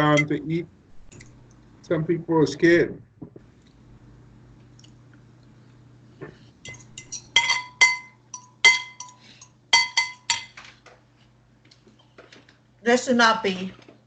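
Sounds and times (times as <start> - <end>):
faint low hum: 0.0 - 14.0
utensil clinking against dish: 6.6 - 10.6.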